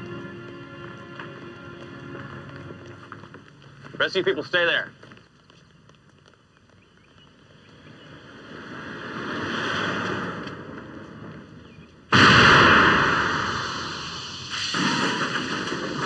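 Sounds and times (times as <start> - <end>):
rushing noise: 7.9 - 11.5, 12.1 - 16.0
loud blast of noise: 12.1 - 16.0.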